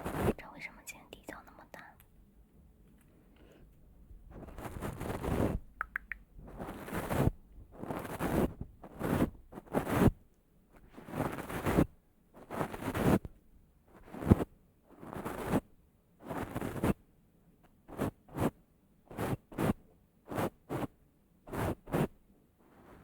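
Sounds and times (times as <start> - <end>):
sharp click: 5.8 - 6.3.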